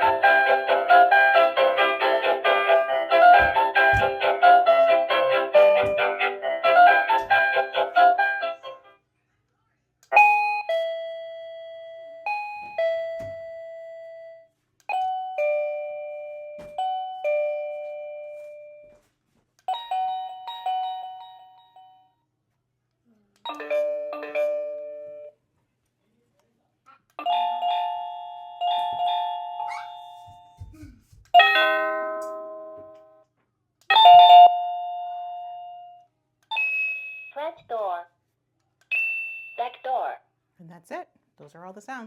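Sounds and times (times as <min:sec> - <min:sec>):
doorbell chime tunes: 0:10.2 - 0:19.0, 0:19.7 - 0:22.2, 0:27.2 - 0:30.4, 0:31.4 - 0:33.1, 0:33.9 - 0:37.4.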